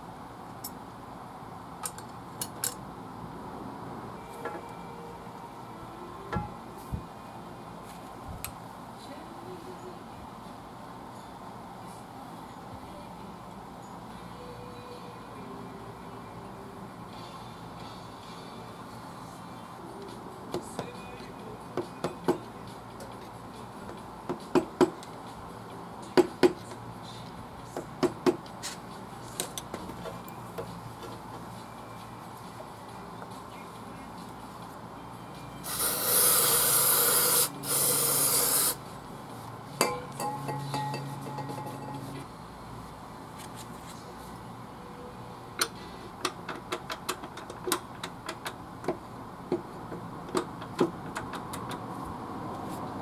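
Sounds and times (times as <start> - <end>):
metallic taps with short ring: 39.8 - 42.1
sharp clicks and knocks: 45.6 - 51.9.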